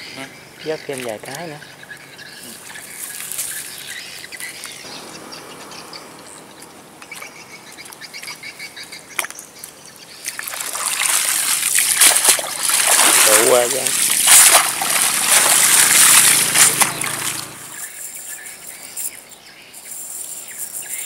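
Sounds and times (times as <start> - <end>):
faint bird chirps: 0.0 - 10.4, 17.7 - 21.0
shallow water trickling and sloshing: 0.9 - 4.6, 6.5 - 17.9
loud water splashing: 10.3 - 17.8.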